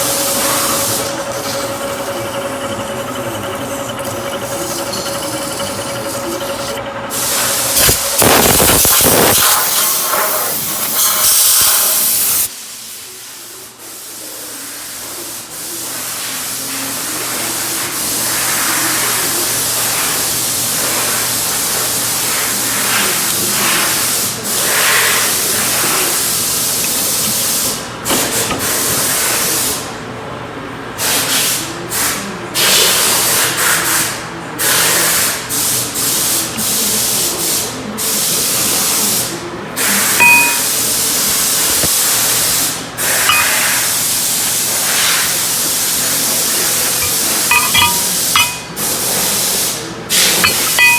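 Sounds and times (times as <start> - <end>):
machine motor hum: 0.0 - 9.5
loud hissing noise: 7.1 - 12.5.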